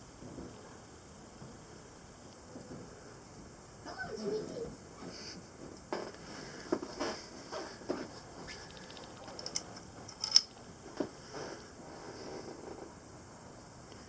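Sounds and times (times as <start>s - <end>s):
fast ticks: 8.5s - 9.7s
metal tool clicks and scrapes: 8.7s - 10.6s.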